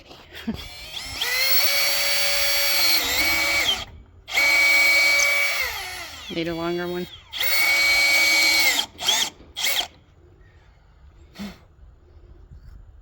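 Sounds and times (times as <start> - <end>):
electric drill boring into wood: 0.5 - 10.0.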